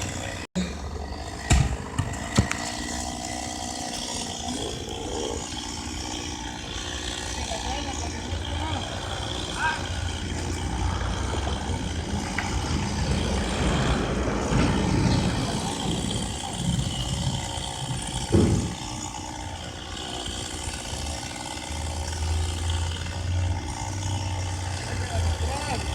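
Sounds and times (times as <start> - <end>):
loud sharp thump: 1.5 - 2.5, 18.3 - 18.7
engine idling: 4.0 - 25.9.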